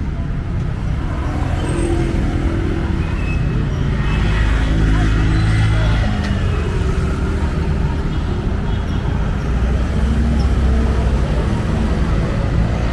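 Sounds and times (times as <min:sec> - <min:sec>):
city traffic noise: 0:00.0 - 0:12.9.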